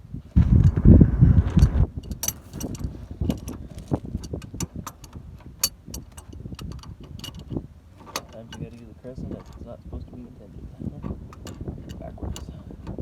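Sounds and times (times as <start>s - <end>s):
loud low rumble: 0.4s - 2.9s
wrench metallic clicks: 1.5s - 8.8s.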